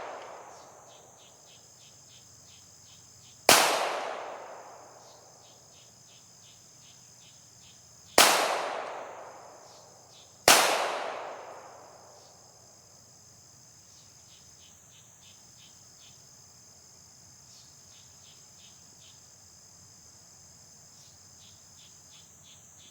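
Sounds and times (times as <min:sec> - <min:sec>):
pistol shots: 0:00.0 - 0:01.1, 0:03.5 - 0:05.1, 0:08.2 - 0:09.7, 0:10.5 - 0:12.0
insects chirping: 0:00.0 - 0:22.9.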